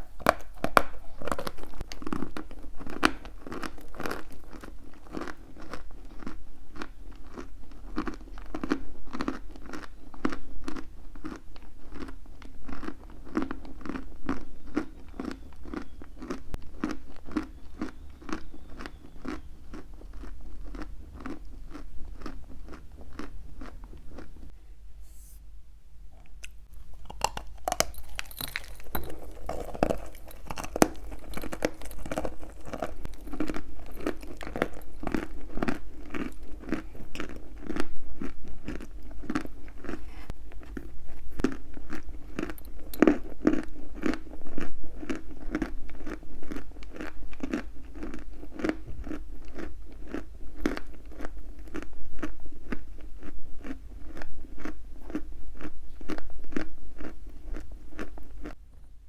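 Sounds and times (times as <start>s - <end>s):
chalk being chewed: 0.0s - 24.4s, 26.4s - 58.6s.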